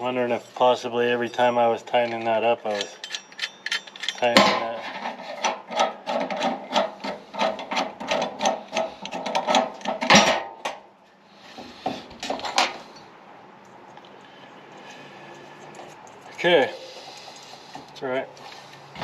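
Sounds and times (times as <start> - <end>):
metal scrape: 2.0 - 10.5
ratchet wrench clicking: 2.7 - 4.2.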